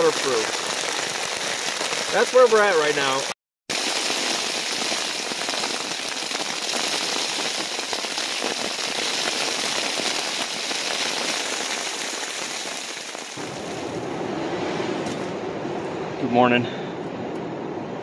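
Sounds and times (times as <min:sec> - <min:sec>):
heavy rain on a tent: 0:00.0 - 0:14.1.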